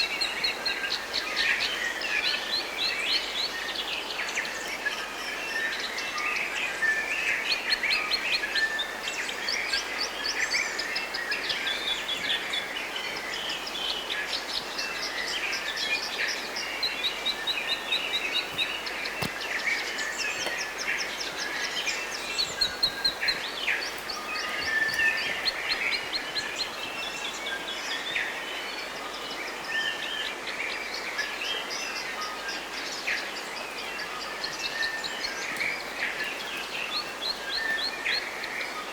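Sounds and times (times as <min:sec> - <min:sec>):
birds singing and chirping: 0:15.6 - 0:30.4.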